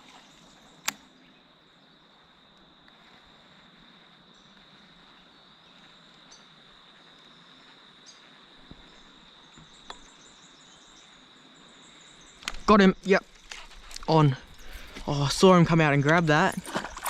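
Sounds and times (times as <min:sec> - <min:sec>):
high-pitched insect trill: 0:00.0 - 0:17.0
outdoor hiss: 0:02.0 - 0:16.4.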